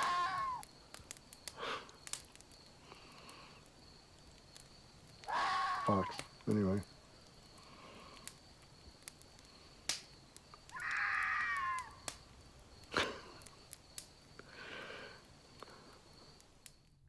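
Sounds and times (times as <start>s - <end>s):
fox screaming: 0.0s - 0.6s, 5.2s - 6.3s, 10.7s - 12.0s
sharp clicks: 0.6s - 2.6s, 6.0s - 14.1s.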